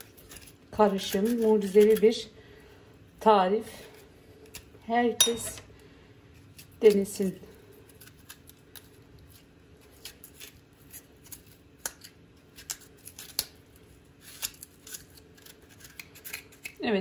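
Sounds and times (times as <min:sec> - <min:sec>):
spoon scraping radish flesh: 0:00.0 - 0:02.2, 0:14.2 - 0:16.8.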